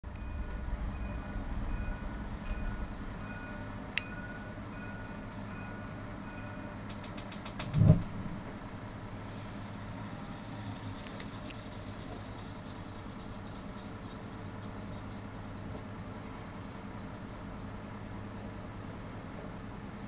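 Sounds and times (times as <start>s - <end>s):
reversing warning tones: 0.0s - 6.9s
bus engine running: 0.0s - 20.0s
sharp clicks: 6.9s - 8.2s.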